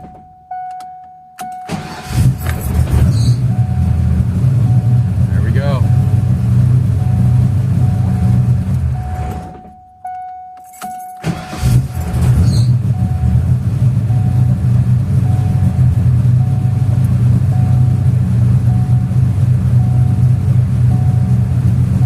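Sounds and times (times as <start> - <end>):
car engine starting: 1.4 - 10.0, 10.6 - 22.0
car engine idling: 1.5 - 22.0
short electronic beeps: 7.0 - 11.4.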